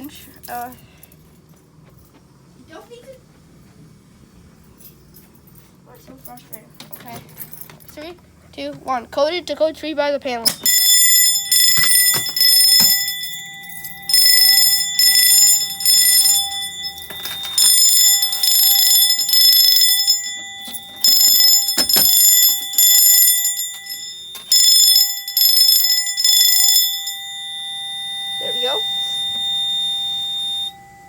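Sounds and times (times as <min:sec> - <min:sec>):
fire alarm bells ringing: 0:10.4 - 0:31.0.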